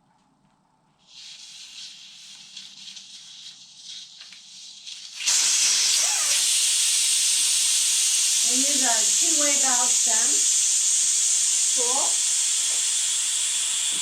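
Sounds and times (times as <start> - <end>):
air hissing from tire valve: 5.1 - 14.0.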